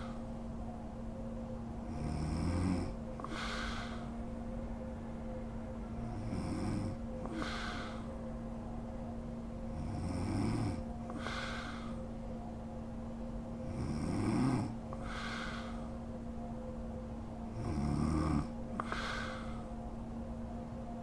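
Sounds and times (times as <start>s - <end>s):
woman snoring: 1.9s - 3.9s, 6.0s - 8.0s, 9.8s - 11.9s, 13.7s - 15.8s, 17.6s - 19.6s
breathy out-breath: 3.2s - 4.2s, 6.9s - 8.3s, 11.1s - 12.1s, 14.9s - 16.0s, 18.7s - 19.8s.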